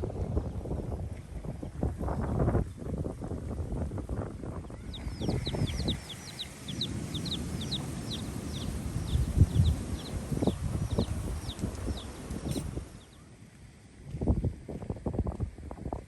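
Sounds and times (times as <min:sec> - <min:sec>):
low rumbling microphone noise: 0:00.0 - 0:13.2
bird chirping: 0:04.6 - 0:13.3.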